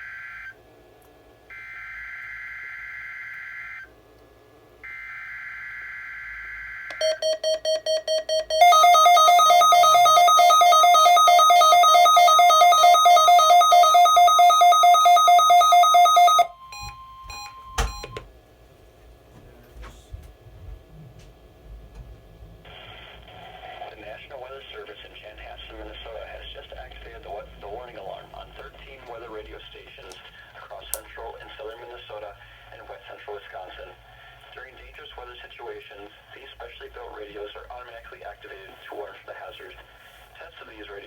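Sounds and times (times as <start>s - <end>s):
steady warning alarm tone: 4.8s - 18.3s
rapid electronic beeping: 7.0s - 18.2s.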